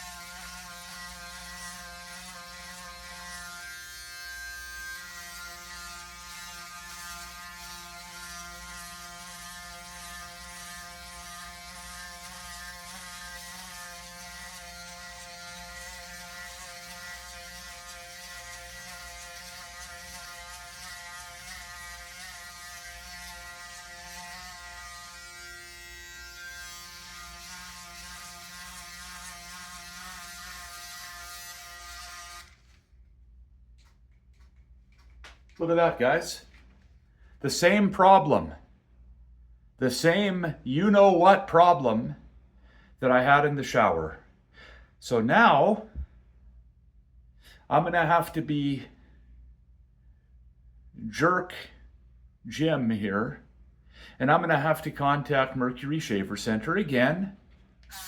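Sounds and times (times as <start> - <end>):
electric shaver buzzing: 0.0 - 32.7.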